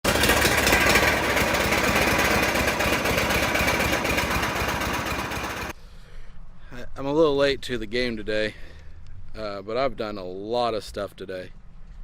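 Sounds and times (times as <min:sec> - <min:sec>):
farm machinery engine running: 0:00.0 - 0:05.7.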